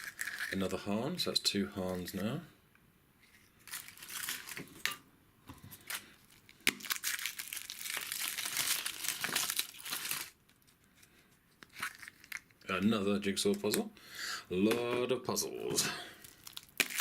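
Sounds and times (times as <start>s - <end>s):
wrapper crinkling and tearing: 0.0s - 0.6s, 3.6s - 4.9s, 5.8s - 12.6s, 16.2s - 17.0s.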